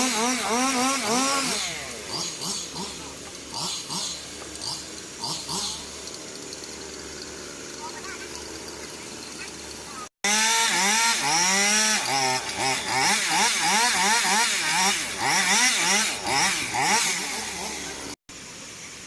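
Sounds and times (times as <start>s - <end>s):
small engine revving: 0.0s - 18.2s.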